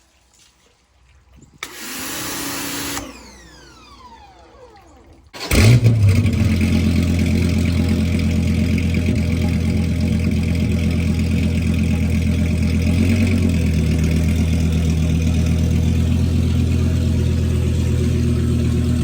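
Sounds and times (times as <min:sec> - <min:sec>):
engine starter cranking: 0:01.6 - 0:19.0
loud engine idle: 0:05.9 - 0:19.0.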